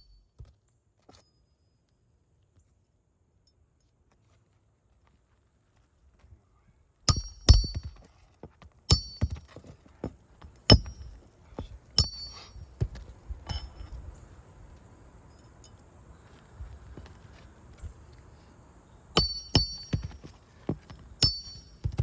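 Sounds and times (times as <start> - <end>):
metal tool clinking on shingles: 7.1 - 14.4, 19.2 - 22.0.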